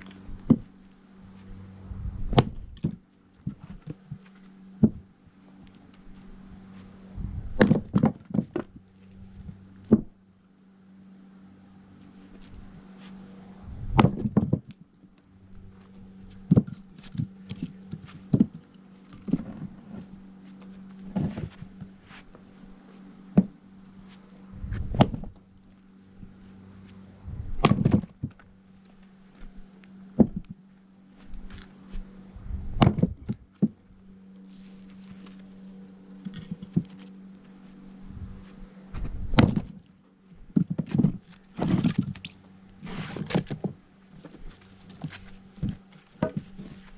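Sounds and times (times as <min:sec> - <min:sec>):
steady low hum: 0:00.0 - 0:46.9
axe chopping logs: 0:00.3 - 0:00.7, 0:02.3 - 0:04.2, 0:04.8 - 0:05.1, 0:07.6 - 0:08.8, 0:09.4 - 0:10.1, 0:13.9 - 0:14.8, 0:16.4 - 0:19.6, 0:23.3 - 0:23.6, 0:24.8 - 0:25.4, 0:27.6 - 0:28.5, 0:30.1 - 0:30.6, 0:32.8 - 0:33.8, 0:39.0 - 0:39.8, 0:40.5 - 0:46.9.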